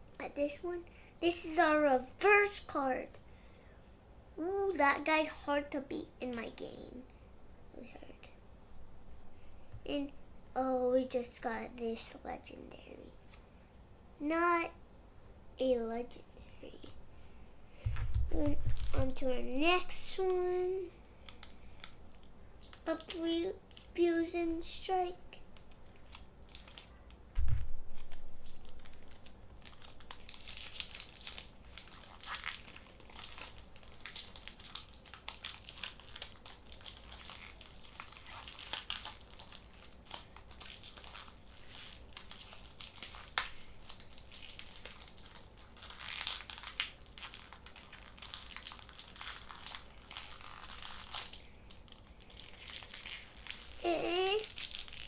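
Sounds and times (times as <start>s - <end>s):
loud thump: 17.8s - 19.0s, 27.4s - 28.0s
foil wrapper crinkling and tearing: 17.9s - 55.0s.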